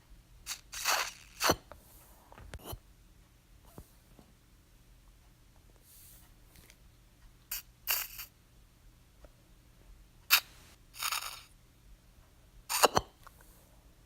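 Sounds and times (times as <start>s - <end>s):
nasal aspirator suction bursts: 0.5s - 1.6s, 7.5s - 8.3s, 10.3s - 11.5s.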